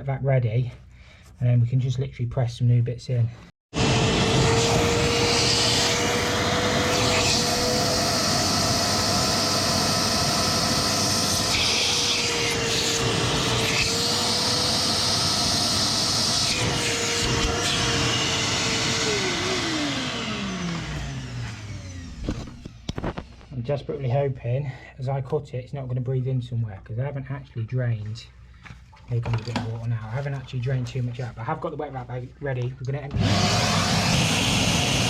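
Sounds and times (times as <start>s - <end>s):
wet vac motor running: 3.7s - 23.5s, 33.1s - 35.0s.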